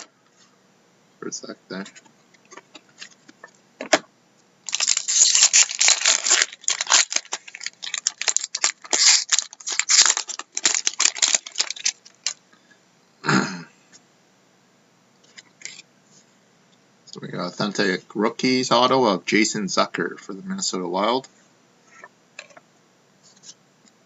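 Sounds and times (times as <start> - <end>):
foil wrapper tearing and crinkling: 4.7 - 12.4.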